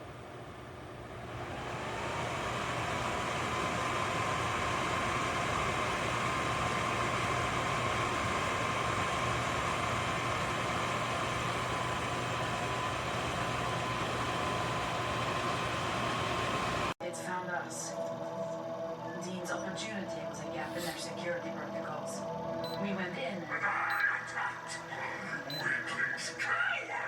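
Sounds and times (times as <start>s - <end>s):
fan air rushing: 0.0s - 17.0s, 20.5s - 21.2s
fan motor whine: 0.0s - 27.0s.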